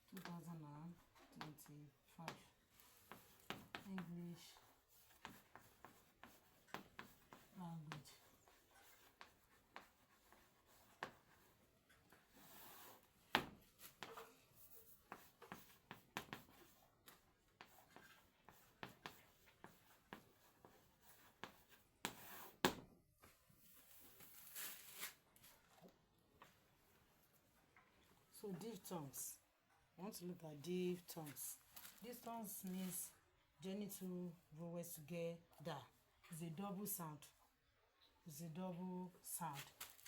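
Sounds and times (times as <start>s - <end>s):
writing on a board: 1.0s - 22.8s.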